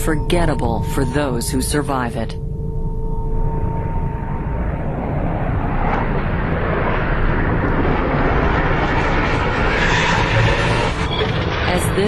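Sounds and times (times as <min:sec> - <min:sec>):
aircraft engine rushing noise: 0:03.5 - 0:12.0.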